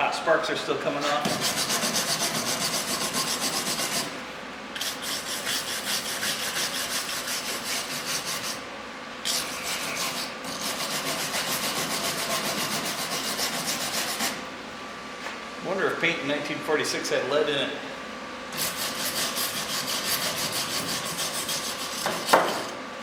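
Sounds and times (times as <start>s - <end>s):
wire brush scrubbing metal: 1.0s - 4.1s, 4.8s - 8.6s, 9.3s - 14.4s, 18.6s - 22.3s.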